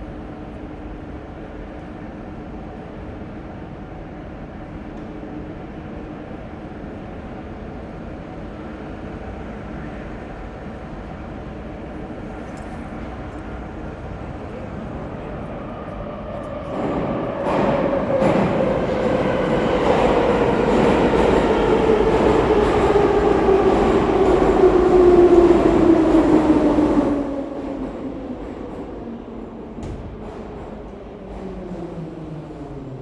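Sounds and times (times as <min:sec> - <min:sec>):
train passing: 0:07.7 - 0:33.0.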